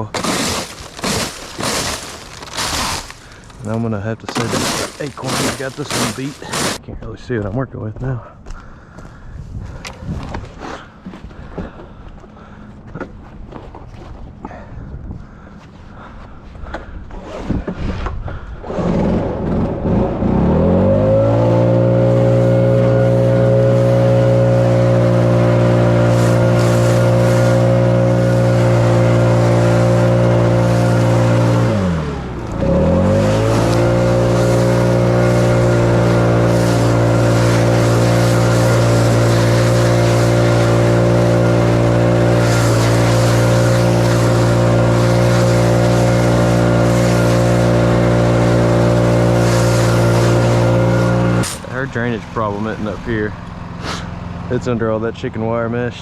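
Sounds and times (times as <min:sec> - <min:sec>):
leaf blower engine revving: 0:00.0 - 0:06.8, 0:20.3 - 0:54.6.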